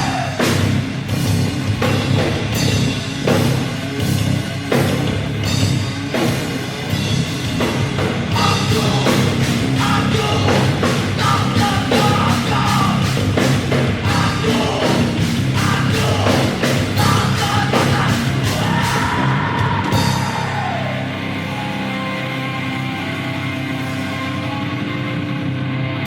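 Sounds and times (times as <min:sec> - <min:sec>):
drum kit beating: 0:00.0 - 0:20.9
heavy distorted rock music: 0:00.0 - 0:26.0
person singing: 0:08.3 - 0:13.2, 0:14.0 - 0:21.8.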